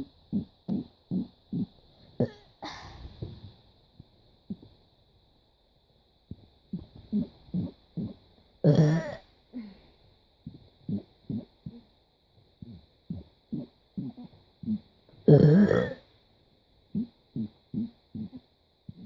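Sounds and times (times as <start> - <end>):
person burping: 2.2 - 2.5, 8.6 - 9.2, 15.3 - 16.0.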